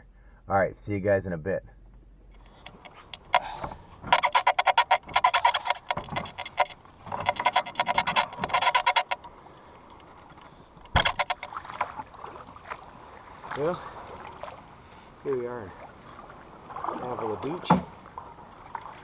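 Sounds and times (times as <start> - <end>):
rapid mechanical clicking: 2.4 - 9.3.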